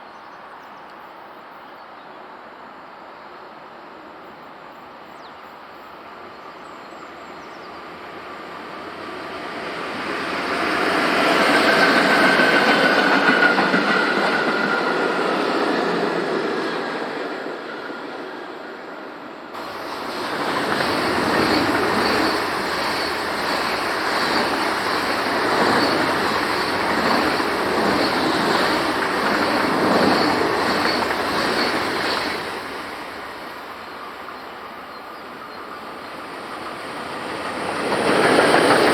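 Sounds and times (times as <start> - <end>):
train passing: 2.4 - 38.9
train wheels squealing: 10.2 - 17.0, 19.6 - 32.8.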